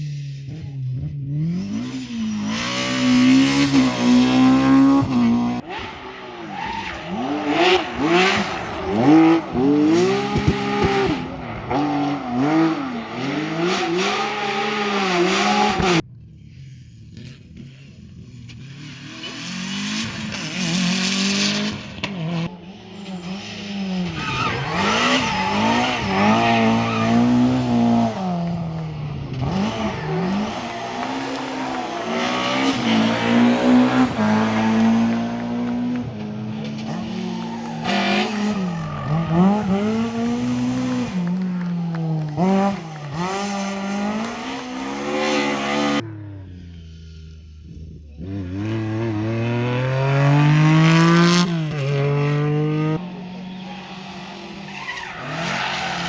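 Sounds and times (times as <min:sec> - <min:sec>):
rally car engines revving: 0:00.0 - 0:56.0
tyre squeal: 0:22.9 - 0:28.3, 0:36.5 - 0:41.2.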